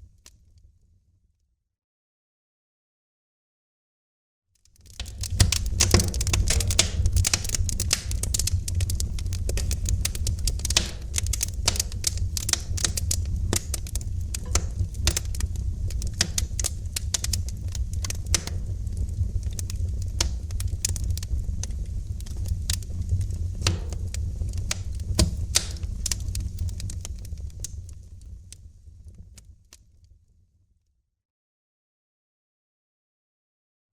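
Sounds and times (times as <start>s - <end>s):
wood fire crackling: 4.6s - 29.8s.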